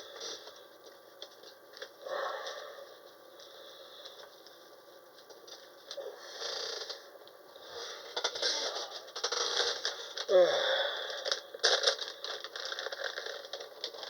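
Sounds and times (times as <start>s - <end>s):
packaging rustling: 11.2s - 14.0s.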